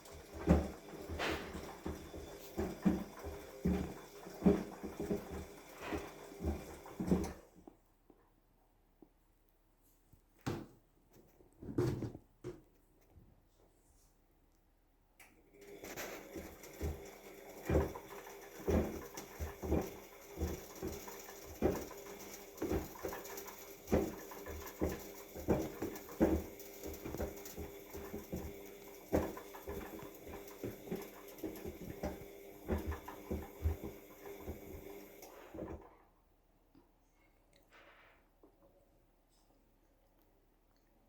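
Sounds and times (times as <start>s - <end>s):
washing machine motor hum: 0.0s - 7.6s, 15.4s - 36.0s
washing machine drum thumps: 23.9s - 35.0s.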